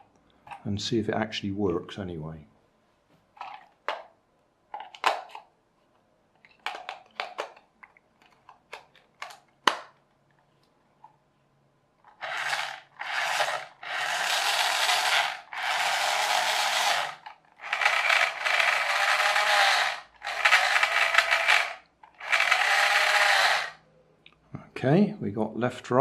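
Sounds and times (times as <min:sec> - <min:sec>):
toy car motors whirring: 0:12.1 - 0:23.8.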